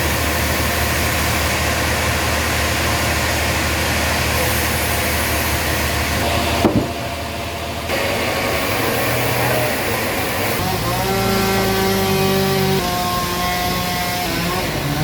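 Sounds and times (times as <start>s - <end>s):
sawmill machinery humming: 0.0s - 15.0s
sharp knock: 6.6s - 7.1s.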